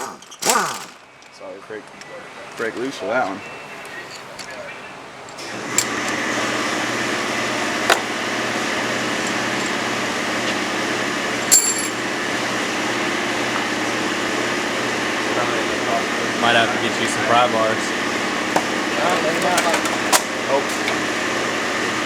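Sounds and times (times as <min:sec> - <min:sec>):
machine humming: 0:02.2 - 0:22.0
sharp metallic clinks: 0:11.4 - 0:12.0.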